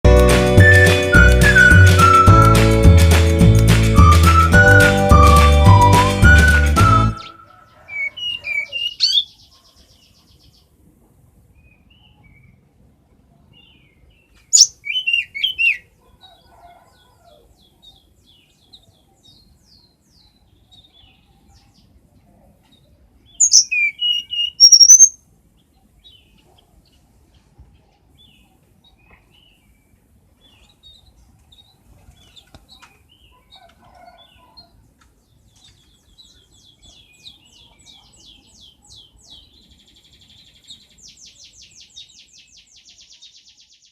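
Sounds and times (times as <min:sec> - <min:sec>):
songbird chirping phrases: 0:04.0 - 0:10.8, 0:13.5 - 0:15.9, 0:17.5 - 0:27.1, 0:35.3 - 0:43.9
faint rapid bird trill: 0:22.7 - 0:27.0.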